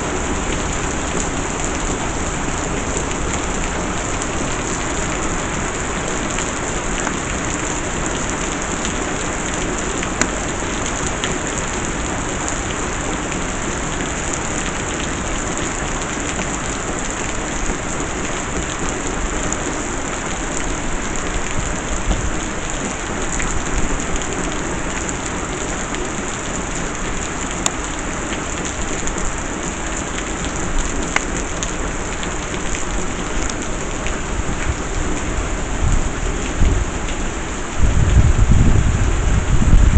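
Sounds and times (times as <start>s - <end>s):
heavy rain pattering: 0.0s - 39.9s.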